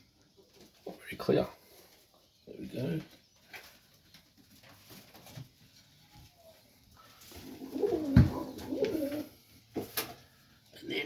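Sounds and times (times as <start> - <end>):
pigeon cooing: 7.2 - 9.4.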